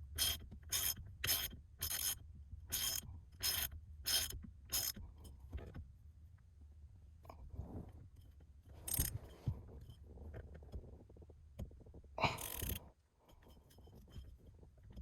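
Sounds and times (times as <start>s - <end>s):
ratchet wrench clicking: 0.2s - 5.0s, 8.9s - 9.2s, 12.4s - 12.8s
faint handling noise: 7.2s - 15.0s.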